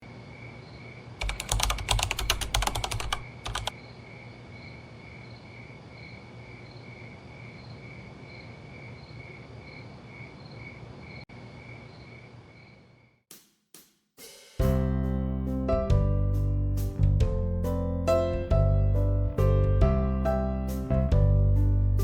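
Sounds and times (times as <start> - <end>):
rapid clicking: 1.2 - 3.7.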